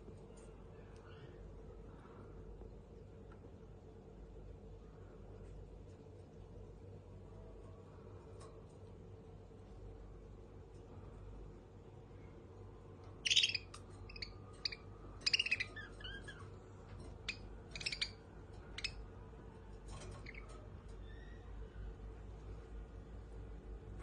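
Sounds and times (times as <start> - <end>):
faint steady hum: 0.0 - 24.0
budgerigars chirping: 13.2 - 16.4, 17.2 - 19.0.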